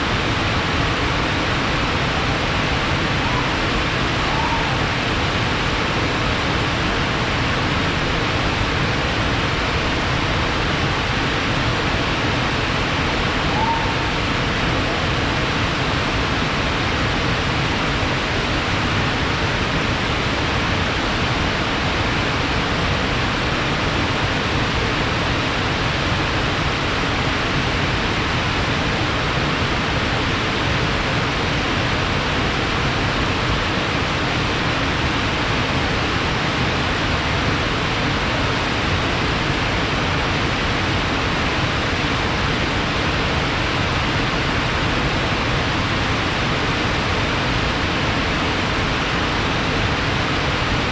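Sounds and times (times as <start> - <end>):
fast-flowing stream rushing: 0.1 - 20.6.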